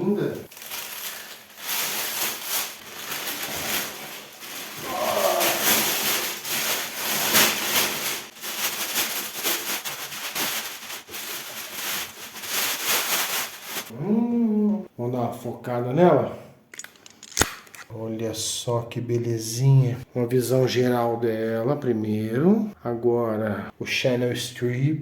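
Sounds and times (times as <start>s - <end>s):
person murmuring: 0.0s - 0.5s, 4.8s - 5.9s, 13.9s - 14.9s
plastic packaging crinkling: 0.4s - 13.9s.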